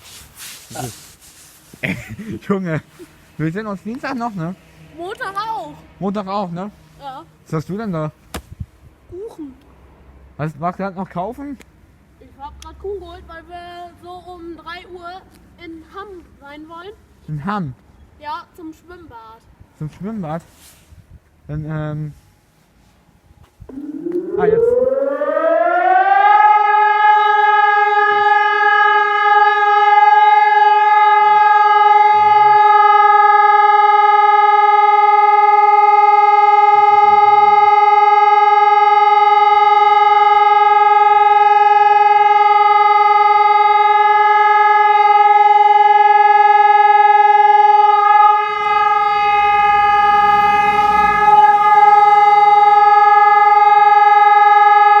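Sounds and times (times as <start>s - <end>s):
warning siren steady tone: 23.6s - 55.0s
rumbling noise: 48.6s - 52.2s.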